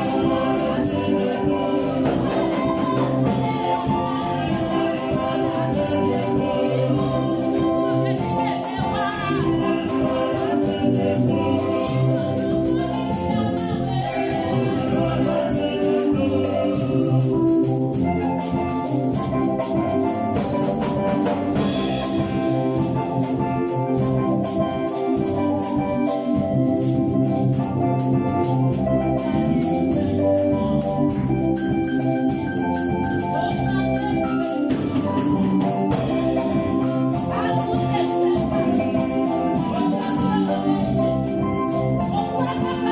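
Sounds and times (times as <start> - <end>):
choir singing: 0.0 - 18.4, 34.4 - 42.9
instrumental accompaniment: 0.0 - 42.9
shaker percussion beat: 0.0 - 42.9.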